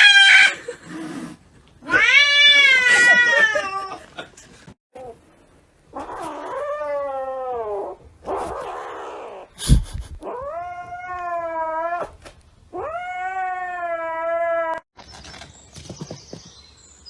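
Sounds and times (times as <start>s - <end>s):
cat yowling: 0.0s - 0.6s, 1.8s - 4.0s, 10.2s - 14.8s.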